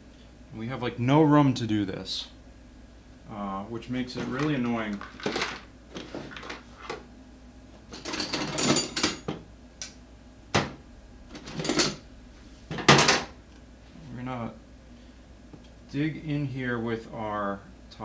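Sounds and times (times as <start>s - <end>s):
metal tools clanking and scraping: 7.9s - 9.4s, 11.4s - 12.0s.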